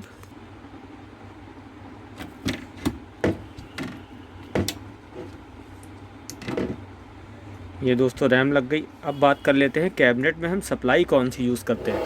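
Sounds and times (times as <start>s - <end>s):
plastic clicks and knocks: 2.2s - 5.4s.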